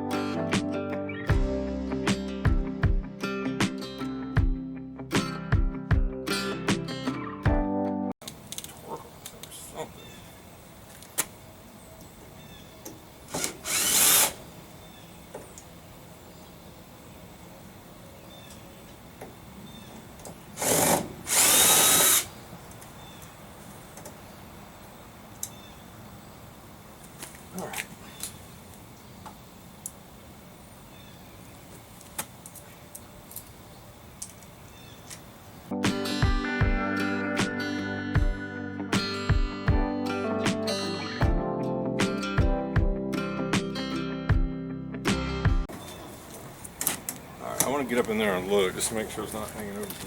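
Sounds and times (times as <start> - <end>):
faint steady background noise: 8.2 - 35.8, 45.6 - 50.0
power drill driving a screw: 13.3 - 14.5, 20.6 - 22.4.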